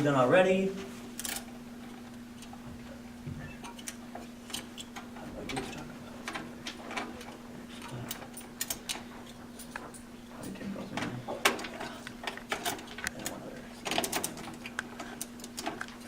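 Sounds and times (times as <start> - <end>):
steady low hum: 0.0 - 16.0
hands clicking and tapping heatsink: 1.2 - 16.0.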